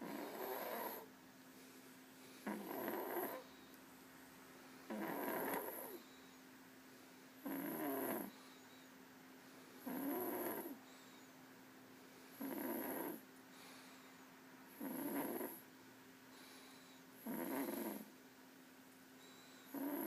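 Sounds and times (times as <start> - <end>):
person snoring: 2.4 - 3.4.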